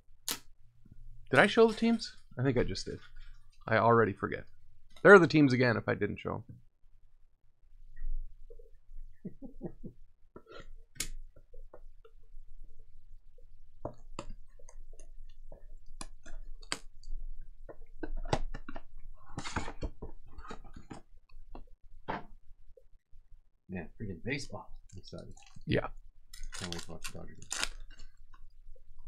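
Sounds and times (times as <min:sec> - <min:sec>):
trading cards crinkling and tapping: 0:26.3 - 0:28.5.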